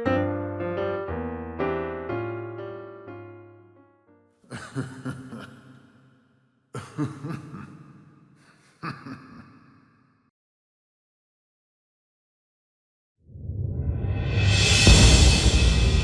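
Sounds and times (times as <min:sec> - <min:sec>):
piano notes: 0:00.0 - 0:04.3
loud struck chords ringing: 0:14.4 - 0:16.0.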